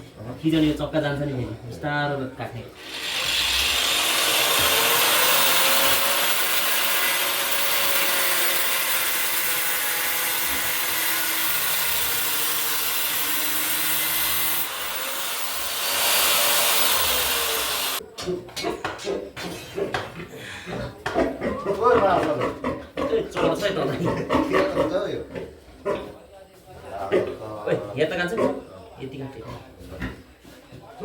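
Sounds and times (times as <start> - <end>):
angle grinder cutting metal: 2.8 - 18.0.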